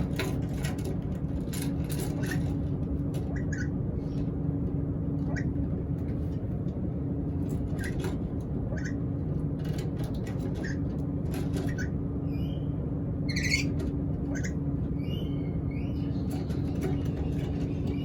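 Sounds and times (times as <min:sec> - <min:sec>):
steady low hum: 0:00.0 - 0:18.0
parrot squeaks and chirps: 0:03.3 - 0:03.7, 0:13.3 - 0:16.2
rising squawk: 0:03.3 - 0:03.8, 0:13.3 - 0:16.1.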